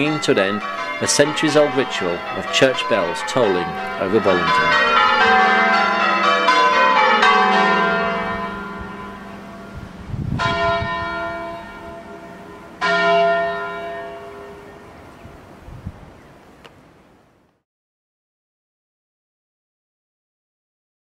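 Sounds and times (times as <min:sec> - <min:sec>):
church bells ringing: 0:00.0 - 0:15.0.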